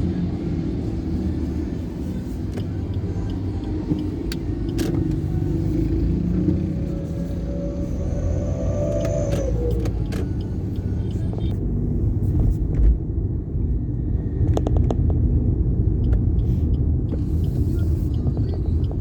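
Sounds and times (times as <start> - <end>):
vehicle engine and road rumble: 0.0 - 19.0.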